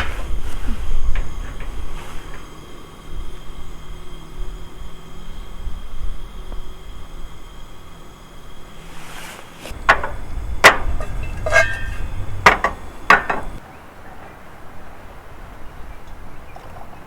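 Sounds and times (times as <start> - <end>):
sharp knocks: 9.7 - 13.6
ringing clink: 10.0 - 13.6.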